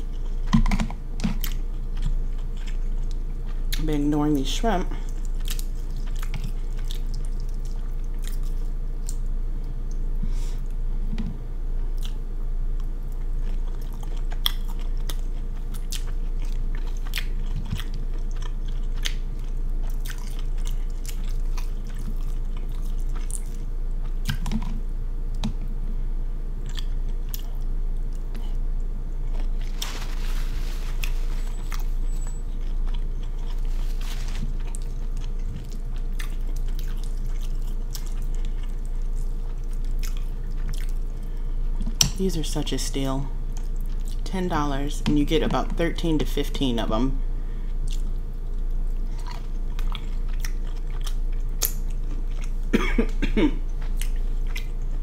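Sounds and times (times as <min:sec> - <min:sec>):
chewing and biting seafood: 0:00.0 - 0:03.8, 0:05.0 - 0:09.3, 0:12.8 - 0:24.8, 0:26.6 - 0:42.0, 0:47.8 - 0:52.7, 0:53.7 - 0:55.0
low electrical hum: 0:00.0 - 0:55.0.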